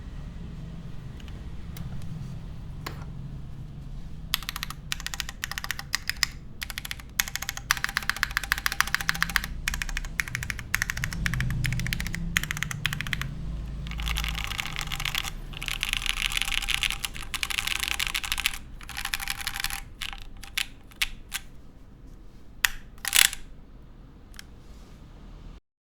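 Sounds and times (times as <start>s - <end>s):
mechanical keyboard typing: 4.3s - 21.6s, 22.6s - 23.6s.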